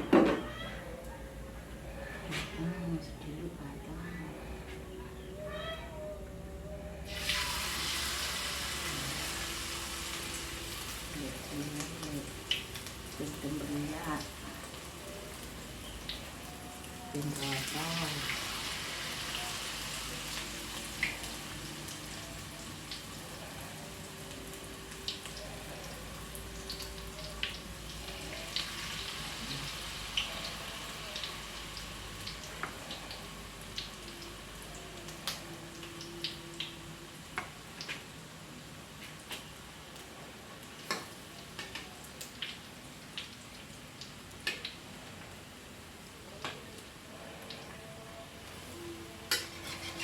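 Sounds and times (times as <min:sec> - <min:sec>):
food sizzling in hot oil: 0:07.1 - 0:24.0, 0:24.6 - 0:44.9, 0:49.2 - 0:50.0.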